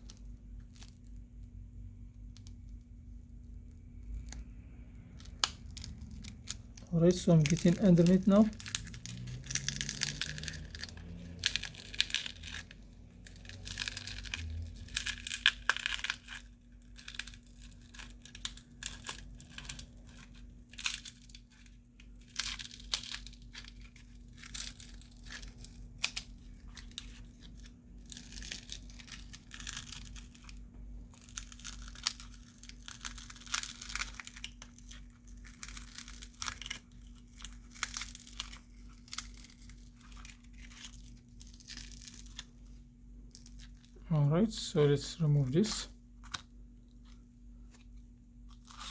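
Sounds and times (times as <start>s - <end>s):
faint low hum: 0.0s - 48.9s
screen glass crackling and tearing: 3.8s - 44.0s.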